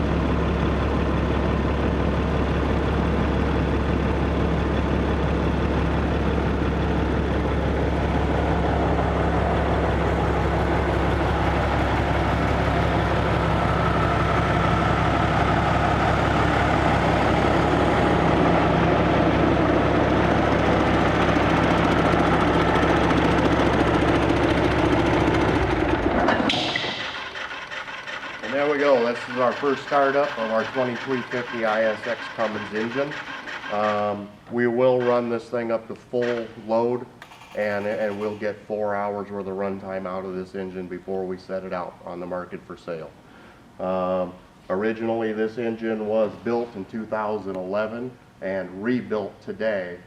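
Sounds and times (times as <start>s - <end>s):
diesel engine running: 0.0s - 35.3s.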